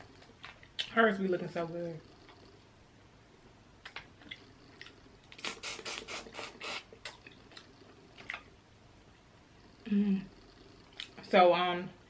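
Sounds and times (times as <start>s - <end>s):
wet eating sounds: 3.8s - 8.6s.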